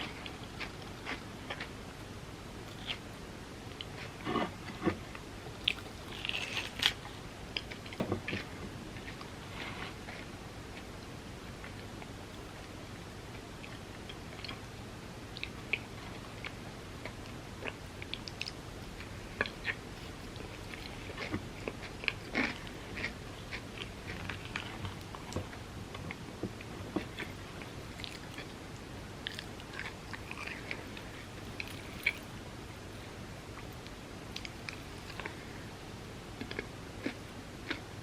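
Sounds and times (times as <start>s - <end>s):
crunchy chewing and biting: 0.0s - 1.8s, 5.6s - 10.9s, 15.4s - 32.3s, 36.4s - 38.0s.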